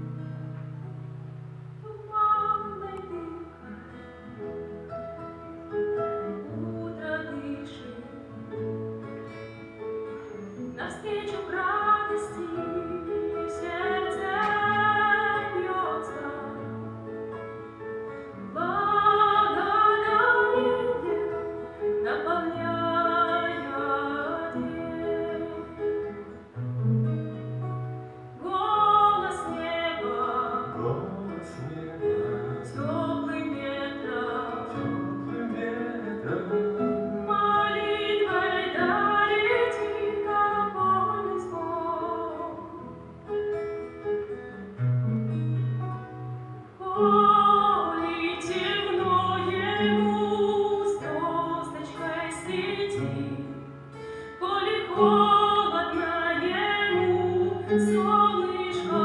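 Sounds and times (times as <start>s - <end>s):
acoustic guitar: 0.0s - 59.0s
woman singing with vibrato: 1.8s - 3.8s, 6.2s - 8.6s, 10.4s - 17.0s, 18.3s - 26.4s, 28.4s - 30.9s, 32.6s - 43.0s, 46.7s - 59.0s.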